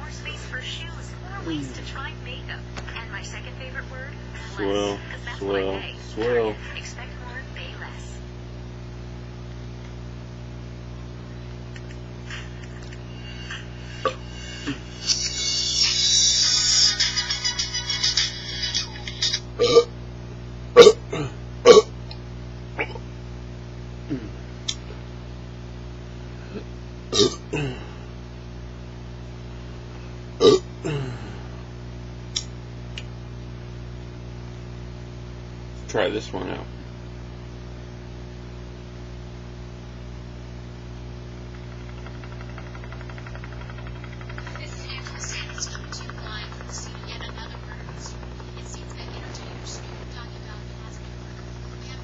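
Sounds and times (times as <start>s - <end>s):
electrical mains hum: 0.0s - 52.0s
faint clicks: 11.7s - 12.0s
man burping: 14.0s - 15.5s, 19.6s - 19.9s, 20.8s - 21.9s, 22.8s - 23.1s, 24.0s - 24.4s, 26.5s - 28.0s, 30.4s - 31.5s.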